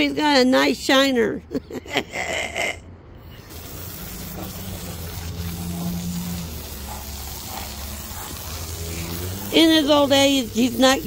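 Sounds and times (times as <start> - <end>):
sawmill hiss: 3.3 - 11.0
sawmill engine hum: 3.5 - 11.0.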